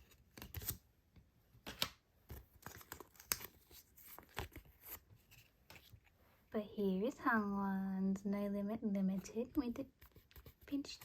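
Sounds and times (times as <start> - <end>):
plastic sleeves crinkling: 1.7 - 6.2.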